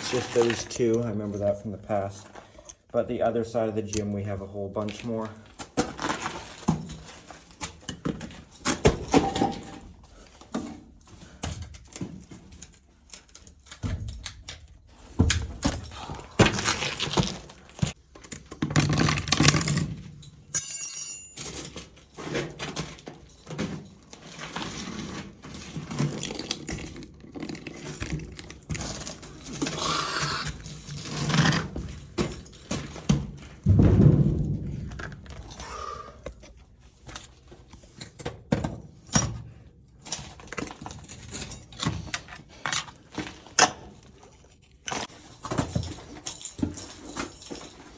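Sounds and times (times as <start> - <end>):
metallic jingle: 20.3 - 21.8
knocks and thuds of handling gear: 30.6 - 36.3, 44.9 - 47.9.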